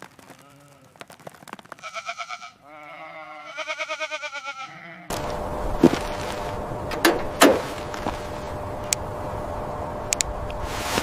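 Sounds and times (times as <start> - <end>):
goat bleating: 1.8 - 5.2
steady mechanical hum: 5.1 - 11.0.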